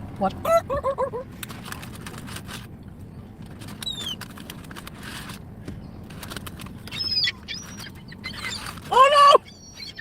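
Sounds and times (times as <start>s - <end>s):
gull call: 6.9s - 10.0s.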